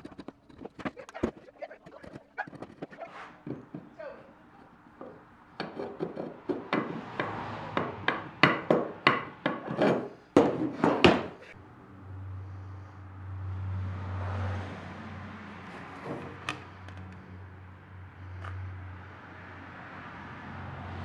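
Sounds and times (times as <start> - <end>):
sharp strikes against wood: 5.0 - 11.6.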